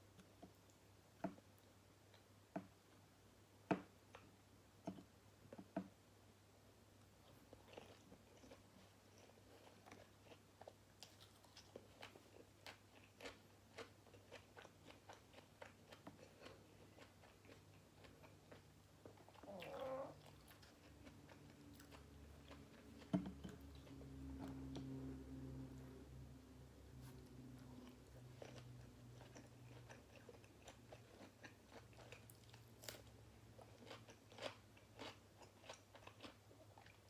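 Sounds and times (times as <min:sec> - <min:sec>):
low steady hum: 0:00.0 - 0:37.0
chewing crunchy food: 0:07.2 - 0:26.2, 0:26.9 - 0:37.0.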